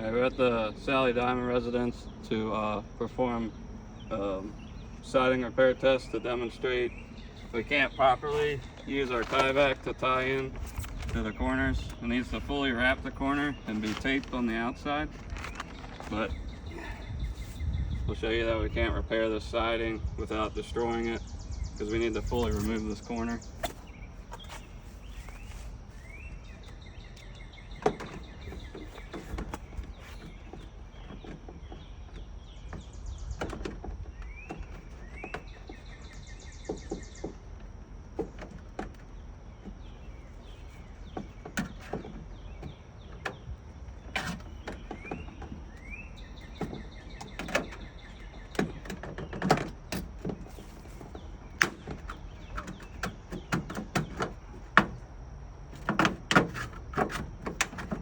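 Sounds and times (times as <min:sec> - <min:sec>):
steady low rumble: 0:00.0 - 0:36.6
birds chirping and trilling: 0:00.0 - 0:58.0
sharp clicks and knocks: 0:26.6 - 0:39.9, 0:41.0 - 0:55.1, 0:55.7 - 0:58.0.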